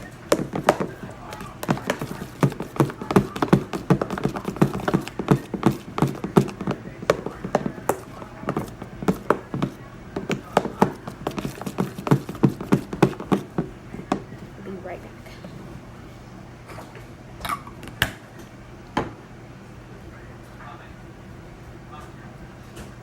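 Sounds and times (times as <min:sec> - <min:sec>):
slime stirred in a bowl: 0:00.0 - 0:14.3.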